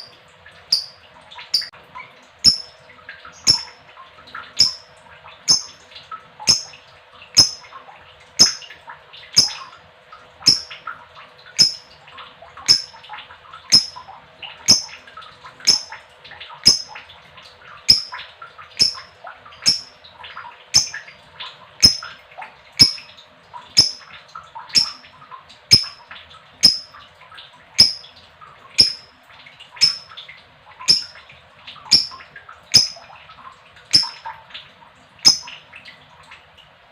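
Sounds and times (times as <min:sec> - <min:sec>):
sharp high click: 0:02.4 - 0:02.8, 0:03.4 - 0:03.8, 0:04.6 - 0:04.9, 0:05.5 - 0:05.8, 0:06.5 - 0:06.8, 0:07.4 - 0:07.7, 0:08.4 - 0:08.7, 0:09.4 - 0:09.8, 0:10.5 - 0:10.8, 0:11.6 - 0:11.9, 0:12.7 - 0:13.0, 0:13.7 - 0:14.0, 0:14.7 - 0:15.0, 0:15.7 - 0:16.0, 0:16.7 - 0:17.0, 0:17.9 - 0:18.2, 0:18.8 - 0:20.0, 0:20.8 - 0:21.0, 0:21.8 - 0:22.1, 0:22.8 - 0:23.1, 0:23.8 - 0:24.1, 0:24.7 - 0:25.0, 0:25.7 - 0:26.0, 0:26.6 - 0:26.9, 0:27.8 - 0:28.1, 0:28.8 - 0:29.1, 0:29.8 - 0:30.1, 0:30.9 - 0:31.2, 0:31.9 - 0:32.2, 0:32.8 - 0:33.0, 0:33.9 - 0:34.3, 0:35.3 - 0:35.5
lovebird chattering trill: 0:02.5 - 0:02.7, 0:03.4 - 0:03.8, 0:04.6 - 0:04.8, 0:05.5 - 0:05.8, 0:06.5 - 0:06.7, 0:07.4 - 0:07.7, 0:08.4 - 0:08.7, 0:09.4 - 0:09.7, 0:10.5 - 0:10.8, 0:11.6 - 0:11.9, 0:12.7 - 0:13.0, 0:13.7 - 0:14.0, 0:14.7 - 0:14.9, 0:15.7 - 0:15.9, 0:16.7 - 0:17.0, 0:17.9 - 0:18.2, 0:18.8 - 0:19.9, 0:20.8 - 0:21.0, 0:21.8 - 0:22.1, 0:22.8 - 0:23.0, 0:23.8 - 0:24.1, 0:24.8 - 0:25.0, 0:25.7 - 0:26.0, 0:27.8 - 0:28.0, 0:28.8 - 0:29.0, 0:29.8 - 0:30.1, 0:30.9 - 0:31.1, 0:31.9 - 0:32.2, 0:32.8 - 0:33.0, 0:33.9 - 0:34.2.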